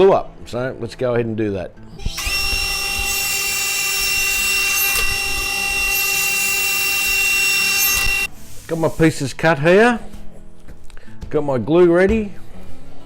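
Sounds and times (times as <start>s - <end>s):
table saw whining: 2.0s - 9.0s.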